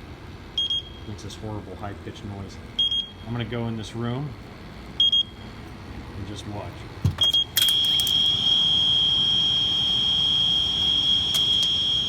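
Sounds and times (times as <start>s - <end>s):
leak detector alarm tone: 2.8s - 3.3s, 5.0s - 5.4s, 7.2s - 12.0s.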